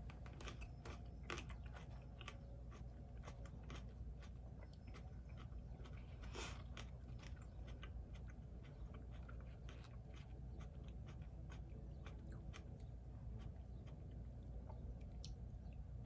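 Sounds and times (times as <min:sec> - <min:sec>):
person chewing food: 0:00.0 - 0:15.4
faint low hum: 0:00.0 - 0:16.0.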